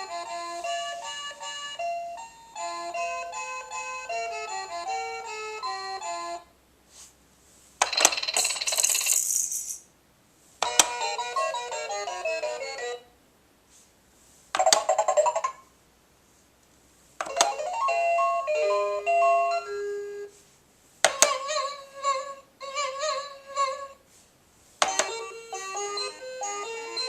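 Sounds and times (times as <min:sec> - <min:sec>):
toy click: 0:07.8 - 0:09.8, 0:10.6 - 0:11.1, 0:14.6 - 0:15.6, 0:17.2 - 0:17.8, 0:21.0 - 0:21.5, 0:24.8 - 0:26.2
toy electronic jingles: 0:07.8 - 0:09.8.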